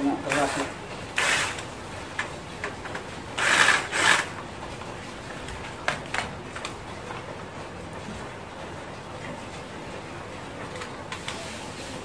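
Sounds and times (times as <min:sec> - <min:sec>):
screwdriver scraping: 0:00.3 - 0:01.7, 0:03.4 - 0:04.3.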